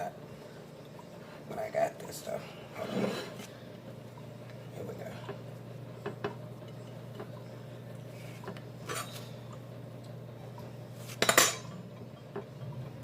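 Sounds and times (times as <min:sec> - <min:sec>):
steady low hum: 0:00.0 - 0:13.0
dishes clinking: 0:11.1 - 0:13.0
dishes clattering: 0:11.2 - 0:12.8.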